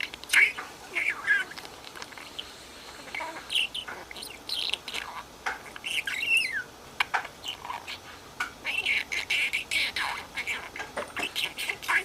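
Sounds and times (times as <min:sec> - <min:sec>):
budgerigar chirping and squawking: 0:03.3 - 0:08.1.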